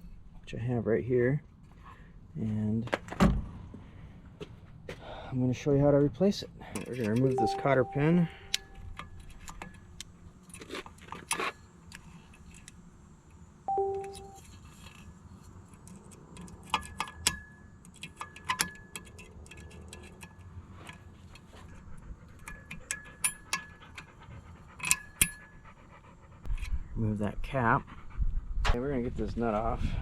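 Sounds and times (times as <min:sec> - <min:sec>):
metallic clicks and scrapes: 0:06.6 - 0:07.4, 0:08.5 - 0:13.4, 0:14.1 - 0:25.7.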